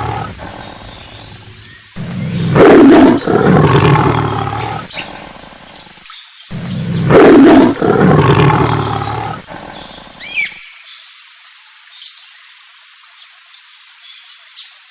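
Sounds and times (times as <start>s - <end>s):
lion roaring: 0.0s - 5.8s, 6.5s - 10.3s
birds chirping: 0.0s - 5.9s, 6.5s - 10.6s.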